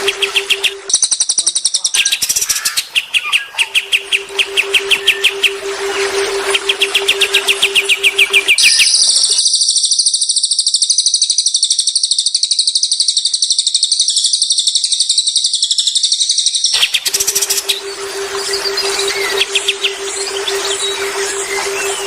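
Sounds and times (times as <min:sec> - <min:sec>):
songbird fast high trill: 0:00.0 - 0:00.9, 0:03.0 - 0:09.4, 0:16.8 - 0:22.0
songbird chirps: 0:00.0 - 0:09.4, 0:16.8 - 0:22.0.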